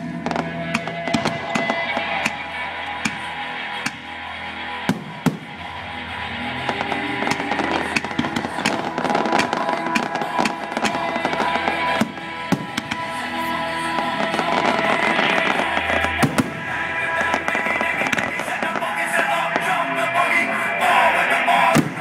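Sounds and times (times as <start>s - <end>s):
fireworks bangs and crackles: 0.0s - 22.0s
music playing: 0.0s - 22.0s.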